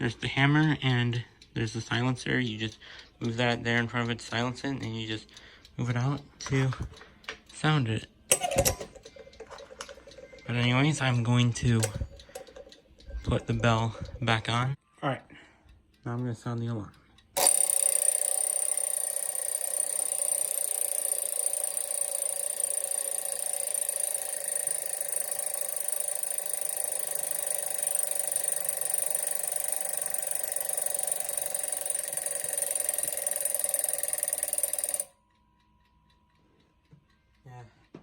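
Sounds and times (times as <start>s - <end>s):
alarm clock bell ringing: 17.4s - 35.2s.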